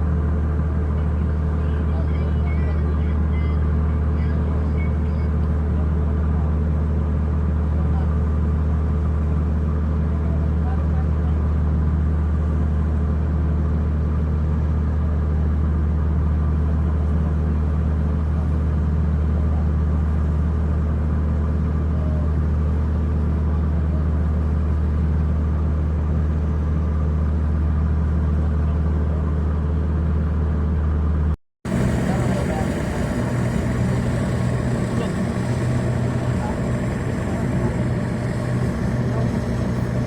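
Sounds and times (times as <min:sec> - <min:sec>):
large engine droning: 0:00.0 - 0:40.0.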